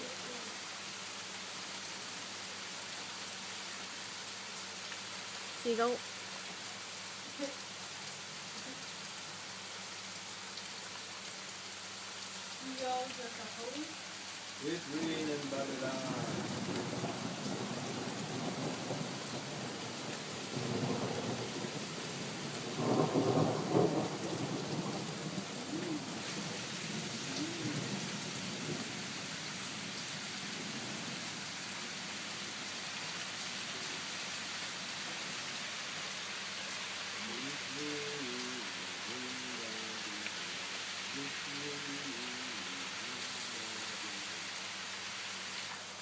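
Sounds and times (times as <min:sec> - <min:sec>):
steady rain: 0:00.0 - 0:46.0
thunder rumbling: 0:15.8 - 0:29.0.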